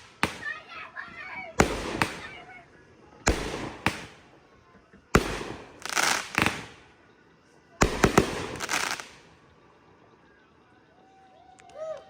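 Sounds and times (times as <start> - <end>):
firework rush and rapid pops: 0.0 - 2.6, 3.2 - 6.9, 7.8 - 9.3
firework bangs: 0.0 - 9.4.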